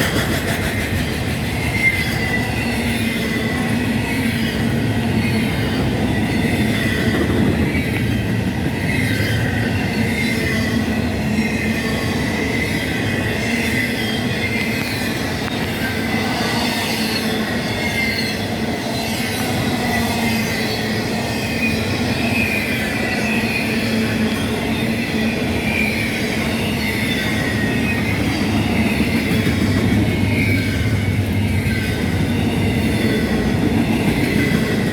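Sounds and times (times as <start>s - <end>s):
freight train rumbling on rails: 0.0s - 34.9s.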